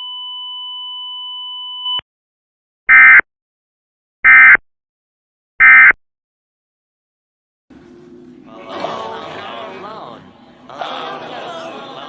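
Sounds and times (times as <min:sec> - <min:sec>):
steady electronic tone: 0:07.7 - 0:10.8.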